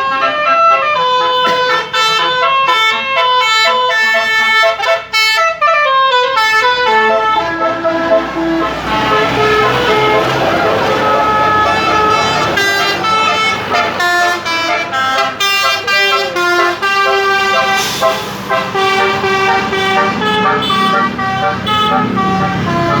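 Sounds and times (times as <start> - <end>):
bus engines running: 0.0 - 23.0
bus multi-tone horns: 0.0 - 23.0.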